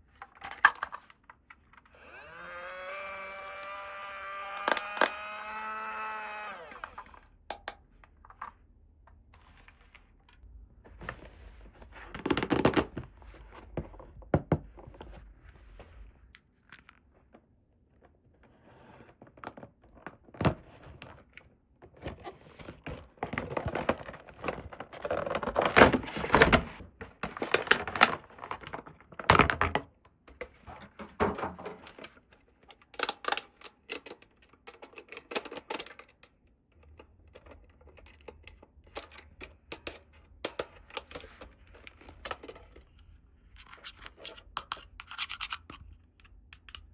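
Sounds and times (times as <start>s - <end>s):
plastic toy pieces clicking: 2.0s - 7.2s.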